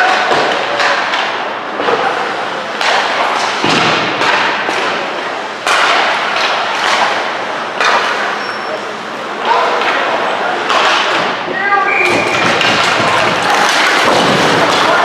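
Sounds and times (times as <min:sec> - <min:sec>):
echoing knocks and thuds: 0:03.6 - 0:04.9, 0:12.1 - 0:15.0.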